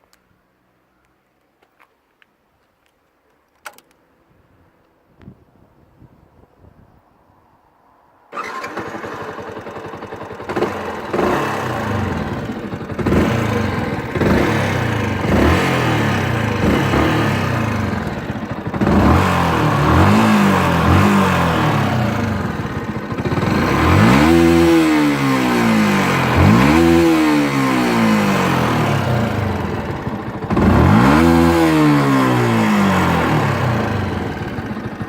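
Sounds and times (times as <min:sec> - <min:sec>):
motorcycle engine revving: 0:08.3 - 0:35.0.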